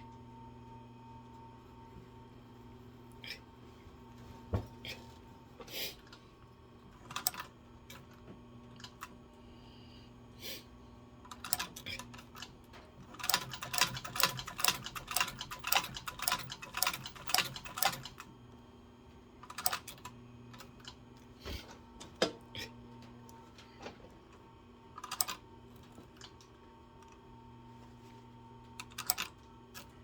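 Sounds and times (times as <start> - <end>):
sewing machine low hum: 0.0 - 30.0
sewing machine needle clicking: 7.0 - 9.1, 11.3 - 18.3, 19.4 - 21.0, 25.0 - 26.4, 28.8 - 29.9.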